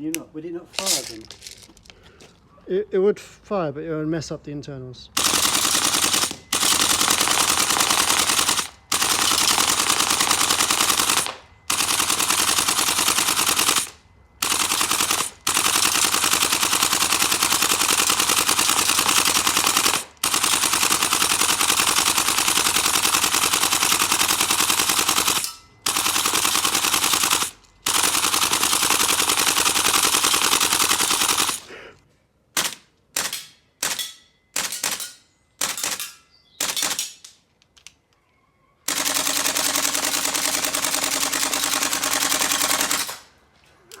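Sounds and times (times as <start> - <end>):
airsoft rifle firing bursts: 5.2 - 31.7, 32.6 - 34.0, 34.6 - 37.1, 38.9 - 43.3.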